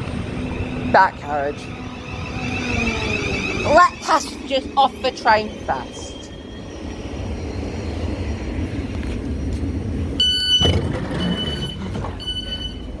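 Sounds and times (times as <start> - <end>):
low train rumble: 0.0 - 13.0
train door warning beeper: 10.2 - 13.0.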